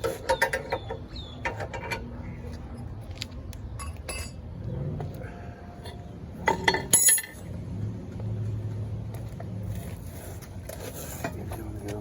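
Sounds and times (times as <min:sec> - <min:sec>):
metal tools clinking: 0:03.8 - 0:04.4, 0:05.8 - 0:07.5.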